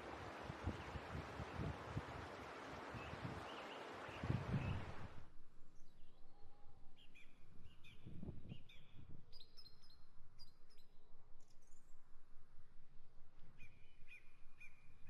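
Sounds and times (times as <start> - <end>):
small birds chirping: 3.0 - 5.0.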